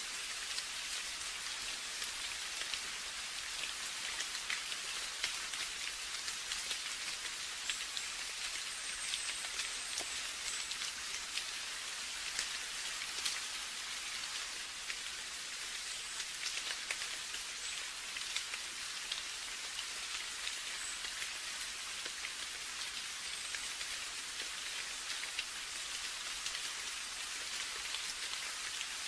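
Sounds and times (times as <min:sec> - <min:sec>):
steady rain: 0:00.0 - 0:29.0.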